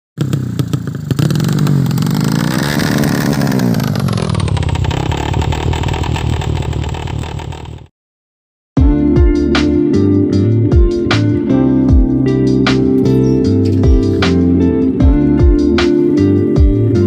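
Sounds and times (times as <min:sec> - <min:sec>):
motorbike engine revving hard: 0:00.2 - 0:07.9.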